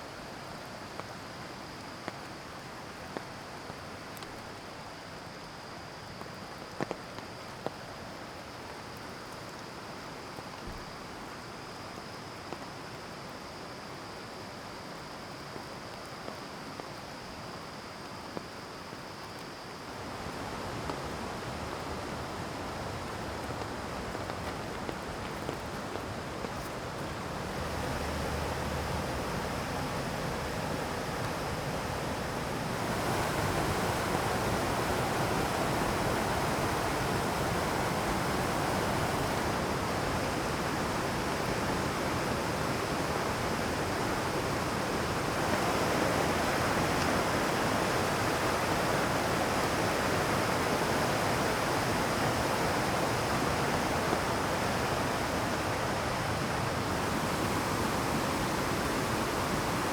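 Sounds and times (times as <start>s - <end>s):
stream rushing over rocks: 19.8s - 59.9s.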